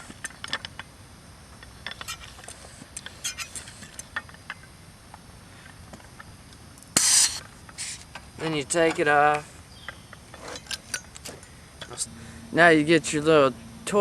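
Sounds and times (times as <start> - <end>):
air hissing: 6.9 - 8.2.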